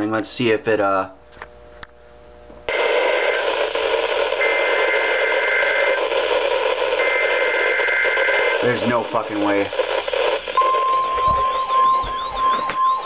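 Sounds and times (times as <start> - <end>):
loud radio static: 2.7 - 13.0
two-tone digital data bursts: 2.7 - 13.0.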